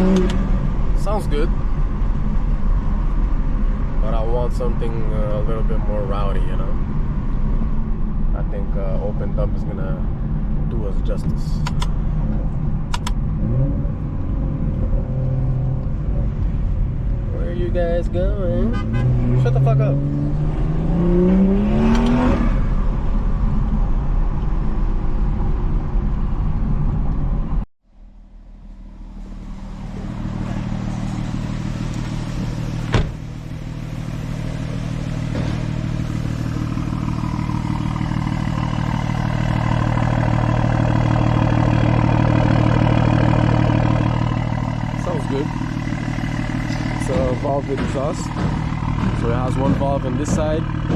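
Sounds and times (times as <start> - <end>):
car engine accelerating: 0.0 - 10.7, 11.4 - 27.6, 28.4 - 50.9
steady engine drone: 0.0 - 50.9
sharp click: 11.6 - 12.0, 12.9 - 13.2.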